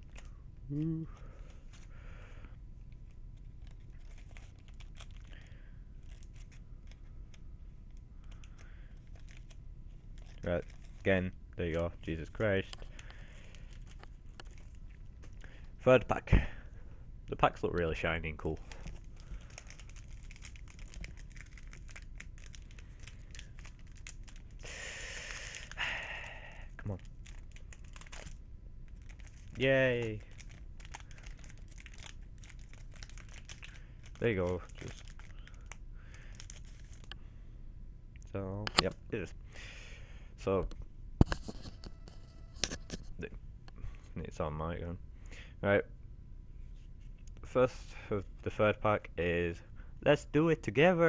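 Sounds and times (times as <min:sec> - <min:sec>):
foil wrapper crinkling and tearing: 0:02.9 - 0:15.8, 0:17.8 - 0:37.2.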